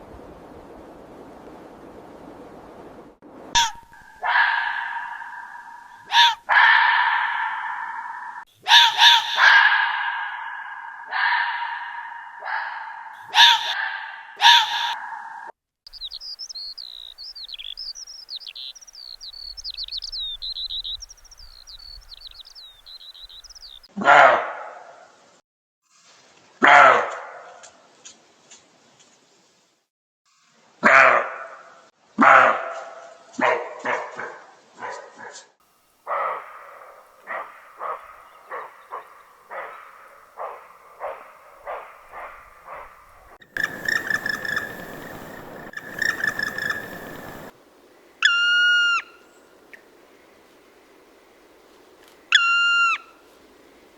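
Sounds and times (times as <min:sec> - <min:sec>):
deer barking: 0:03.6 - 0:15.5, 0:24.0 - 0:24.9, 0:26.6 - 0:27.5, 0:30.8 - 0:35.4, 0:36.0 - 0:47.5
songbird twittering: 0:15.9 - 0:23.9, 0:37.3 - 0:47.5.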